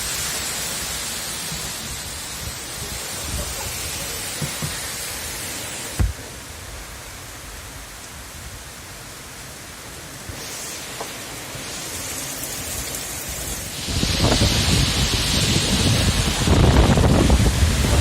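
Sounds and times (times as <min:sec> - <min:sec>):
heavy rain: 0:00.0 - 0:18.0
loud thump: 0:06.0 - 0:06.2.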